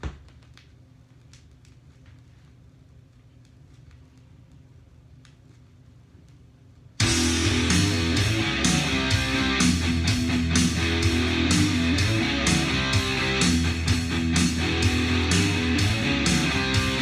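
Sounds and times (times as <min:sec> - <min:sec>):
bass line: 0:07.0 - 0:17.0
steady drum beat: 0:07.0 - 0:17.0
strummed electric guitars: 0:07.0 - 0:17.0.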